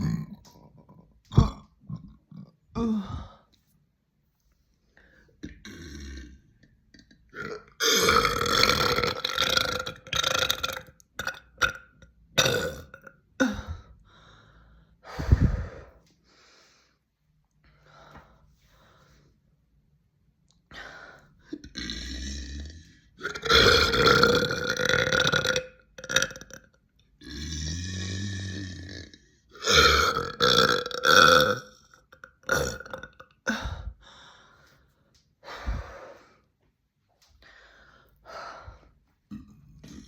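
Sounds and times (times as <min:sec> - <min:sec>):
person belching: 0:00.0 - 0:03.2, 0:05.4 - 0:13.8, 0:21.6 - 0:33.8, 0:39.3 - 0:40.0.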